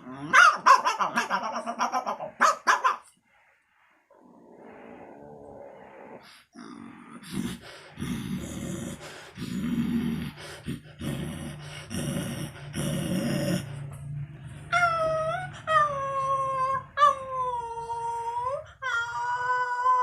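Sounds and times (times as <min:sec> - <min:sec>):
rough vocal bursts: 0:03.5 - 0:14.5
person imitating dog howling: 0:14.7 - 0:20.0.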